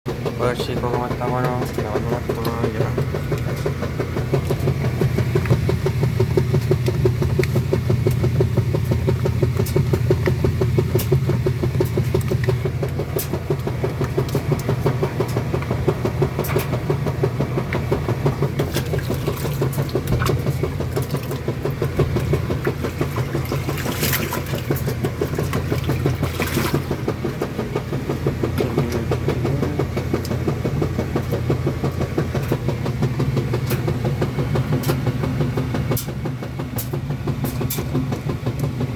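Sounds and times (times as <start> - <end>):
washing machine motor hum: 0.1 - 38.9
water swishes: 17.9 - 30.0.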